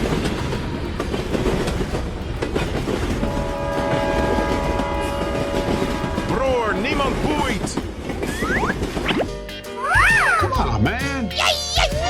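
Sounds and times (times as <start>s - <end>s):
train rumble and wheel clatter: 0.0s - 12.0s
train horn chord: 3.2s - 7.8s.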